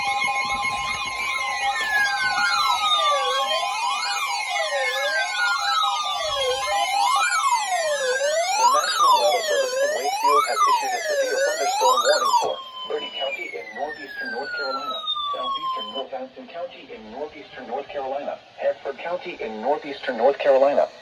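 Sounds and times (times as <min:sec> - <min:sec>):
siren tones sliding downward: 0:00.0 - 0:16.1
wailing electronic siren: 0:00.0 - 0:16.1
two-tone alert signal: 0:08.2 - 0:16.0.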